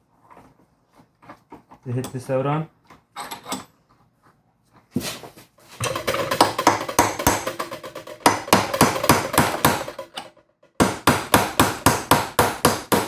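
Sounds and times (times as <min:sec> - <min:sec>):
hammer blows ringing on metal: 0:06.0 - 0:10.1, 0:10.8 - 0:13.0.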